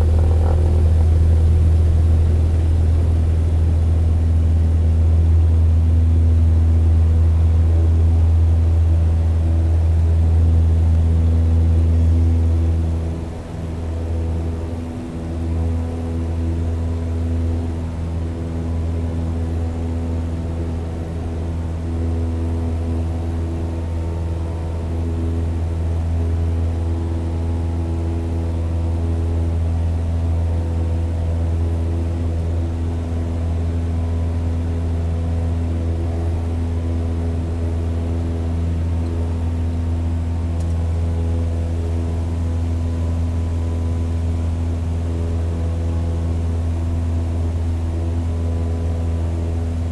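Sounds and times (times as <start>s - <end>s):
propeller plane engine drone: 0.0s - 49.9s.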